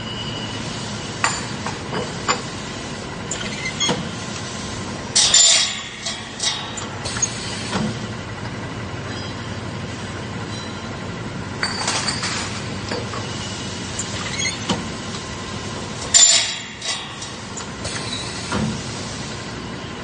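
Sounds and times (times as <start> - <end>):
metal-cutting machine running: 2.7 - 11.6, 12.2 - 18.5.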